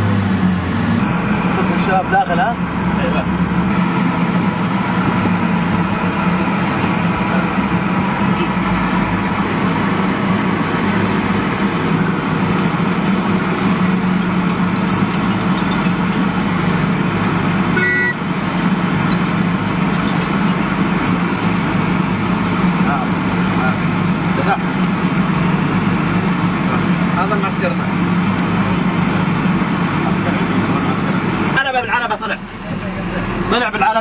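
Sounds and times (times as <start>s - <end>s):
vehicle engine and road noise: 0.0s - 34.0s
short high beep: 17.8s - 18.2s.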